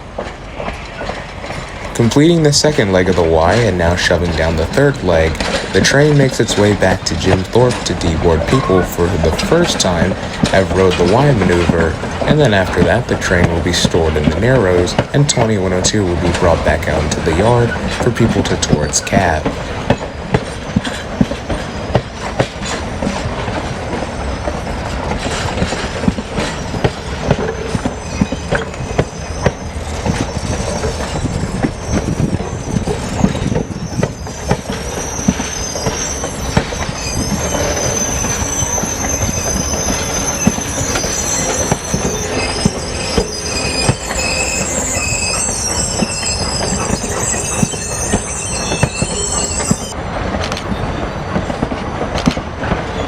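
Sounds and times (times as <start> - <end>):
train wheels clicking over rail joints: 0.0 - 53.0
high flange squeal: 26.4 - 50.0.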